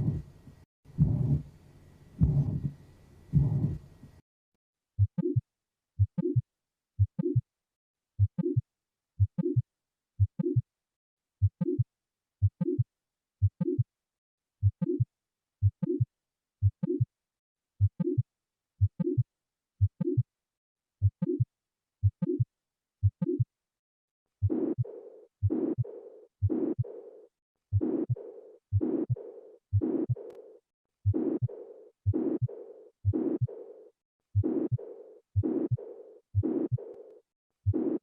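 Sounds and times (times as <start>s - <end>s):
heartbeat thuds: 0.0s - 0.3s, 0.9s - 1.5s, 2.2s - 3.8s, 5.0s - 5.4s, 6.0s - 6.4s, 7.0s - 7.4s, 11.4s - 11.8s, 12.4s - 12.8s, 13.4s - 13.8s, 14.6s - 15.0s, 15.6s - 17.0s, 17.8s - 18.2s, 18.8s - 19.2s, 19.8s - 20.2s, 21.0s - 21.4s, 24.4s - 27.0s, 27.7s - 30.2s, 31.0s - 33.6s, 34.4s - 36.9s, 37.7s - 38.0s
noisy repeating sound: 31.1s - 33.8s, 34.4s - 37.1s, 37.7s - 38.0s.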